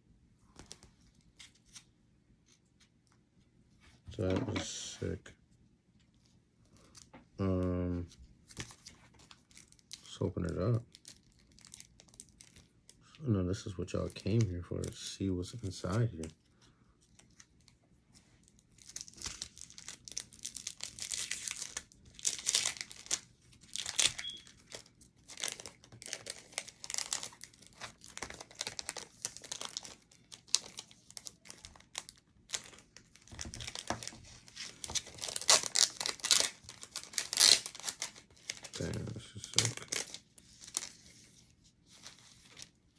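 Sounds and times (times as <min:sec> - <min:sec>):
packaging crinkling and ripping: 0:08.5 - 0:13.0, 0:13.9 - 0:16.3, 0:18.4 - 0:41.2, 0:41.8 - 0:42.8.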